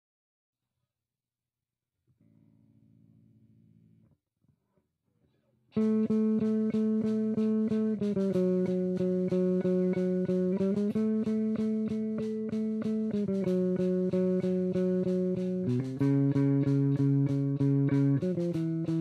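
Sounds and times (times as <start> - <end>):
amplified guitar fast picking: 5.8 - 19.0.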